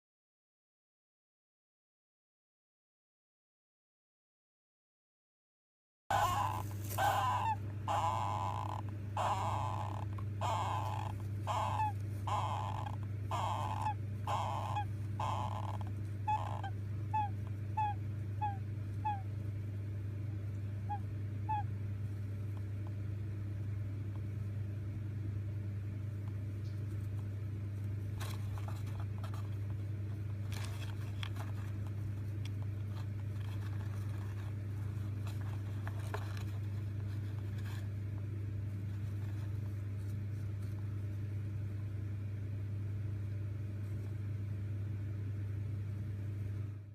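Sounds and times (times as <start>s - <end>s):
hamster squeaky calls: 6.1s - 19.5s, 20.6s - 24.5s, 25.6s - 45.2s
steady low hum: 6.1s - 46.9s.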